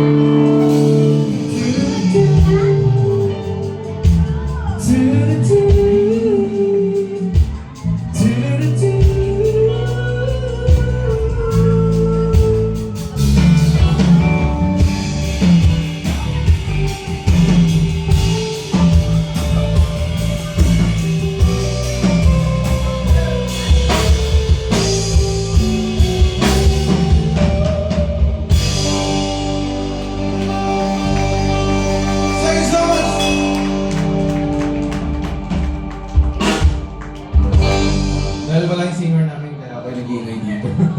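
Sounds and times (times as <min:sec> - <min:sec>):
person singing: 0:00.0 - 0:38.5
drum kit: 0:00.0 - 0:39.1
guitar: 0:00.0 - 0:40.9.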